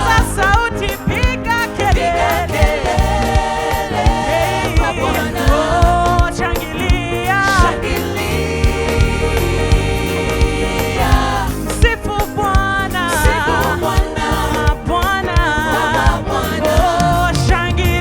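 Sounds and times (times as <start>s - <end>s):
drums: 0.0s - 18.0s
gospel choir singing: 0.0s - 18.0s.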